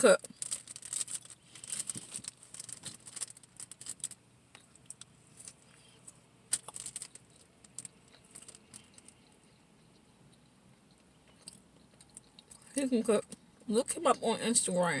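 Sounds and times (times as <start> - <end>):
chewing with wet mouth clicks: 6.6 - 12.8.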